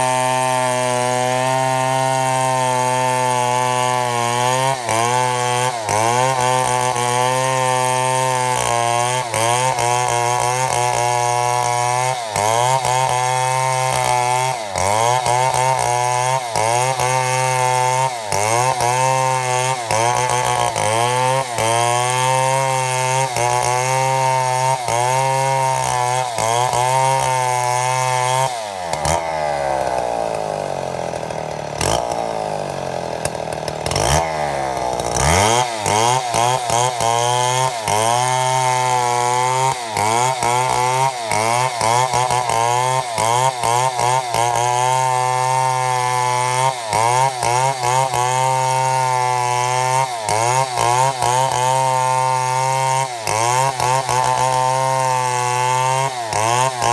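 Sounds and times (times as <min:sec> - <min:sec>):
chainsaw cutting log: 0:00.0 - 0:56.9.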